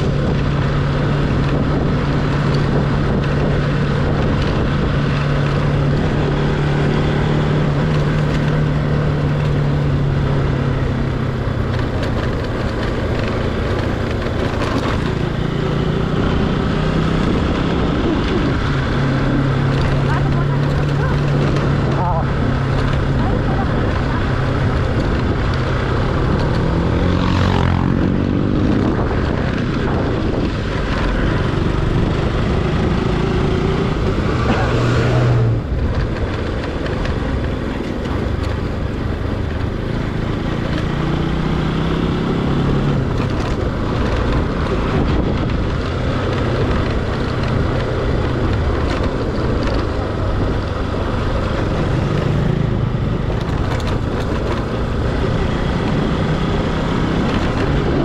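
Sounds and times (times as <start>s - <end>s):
motorcycle engine accelerating: 0.0s - 58.0s
wind rush on microphone: 0.0s - 58.0s.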